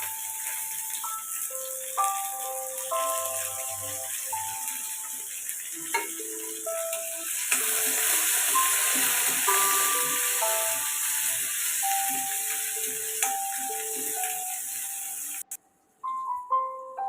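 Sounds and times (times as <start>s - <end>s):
meat sizzling in a pan: 0.0s - 15.5s
light melodic background music: 0.0s - 17.0s.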